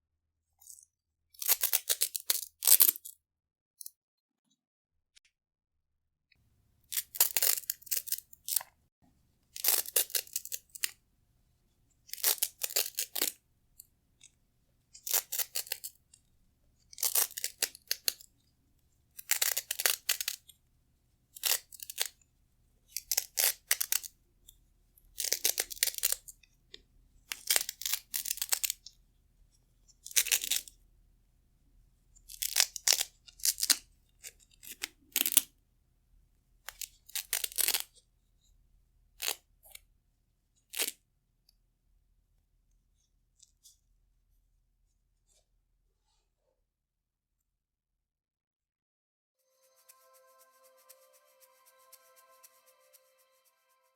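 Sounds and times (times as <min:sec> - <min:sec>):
velcro straps ripping apart: 0:01.4 - 0:03.1, 0:06.9 - 0:08.6, 0:09.6 - 0:11.0, 0:12.1 - 0:13.4, 0:15.0 - 0:16.0, 0:16.9 - 0:18.3, 0:19.2 - 0:20.4, 0:21.4 - 0:22.2, 0:22.9 - 0:24.1, 0:25.2 - 0:26.3, 0:27.3 - 0:28.8, 0:30.0 - 0:30.7, 0:32.3 - 0:35.5, 0:36.7 - 0:37.9, 0:39.2 - 0:39.4, 0:40.7 - 0:41.0.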